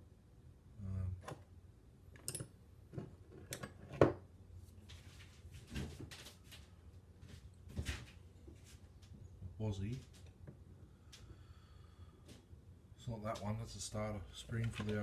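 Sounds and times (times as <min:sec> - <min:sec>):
metal tools clinking on workbench: 0:02.2 - 0:02.5.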